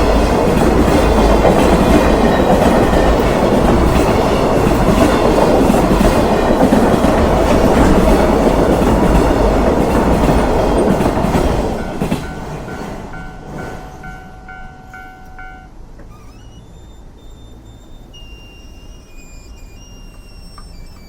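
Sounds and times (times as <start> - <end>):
train clickety-clack on rails: 0.0 - 16.1
repeating short high tone: 13.2 - 21.0.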